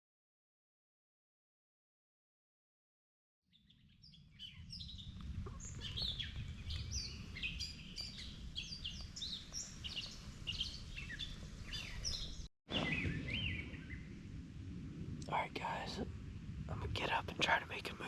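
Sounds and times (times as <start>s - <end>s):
songbirds chirping and whistling: 3.5s - 14.2s
steady low rumble: 4.3s - 18.0s.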